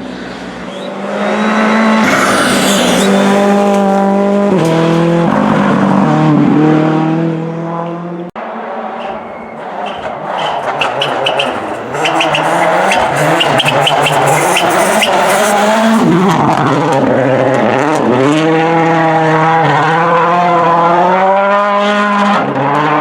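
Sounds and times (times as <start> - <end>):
rally car engine at high revs: 0.0 - 23.0.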